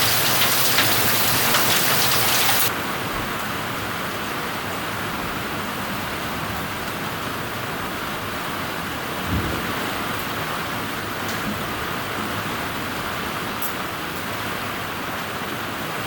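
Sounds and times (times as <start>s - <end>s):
heavy rain hissing: 0.0s - 2.7s.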